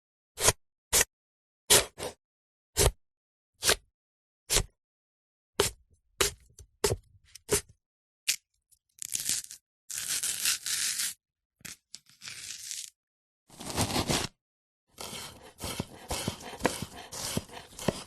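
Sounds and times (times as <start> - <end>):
sharp food preparation sounds: 9.0 - 11.2, 13.5 - 14.3, 15.0 - 18.0.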